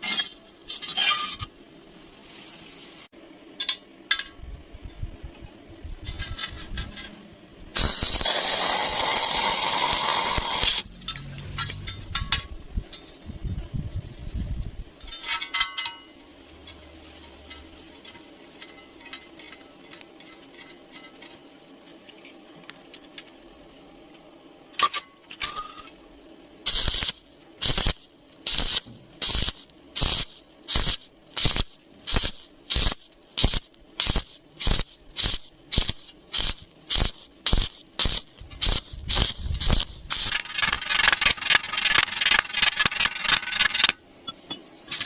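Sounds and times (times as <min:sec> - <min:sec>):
low steady hum: 0:00.0 - 0:45.0
welding arc crackling in bursts: 0:07.7 - 0:12.1, 0:26.6 - 0:44.0.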